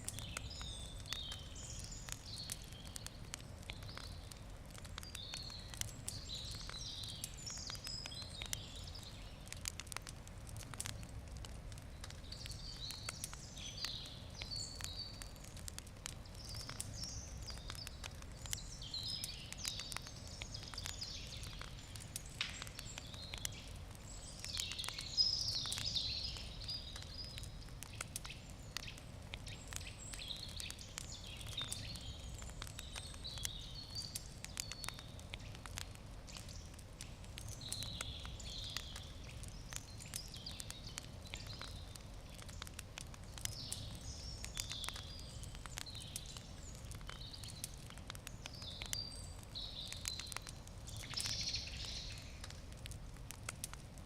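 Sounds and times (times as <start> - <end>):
wood fire crackling and popping: 0.0 - 54.0
birds chirping: 11.8 - 52.5.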